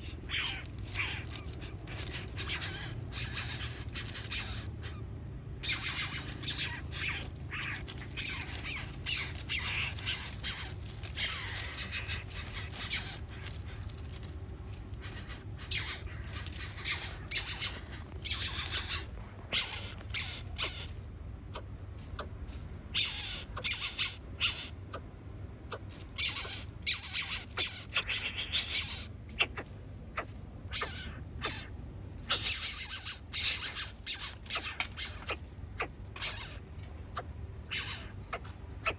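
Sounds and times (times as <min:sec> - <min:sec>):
birds squawking: 0:00.0 - 0:38.9.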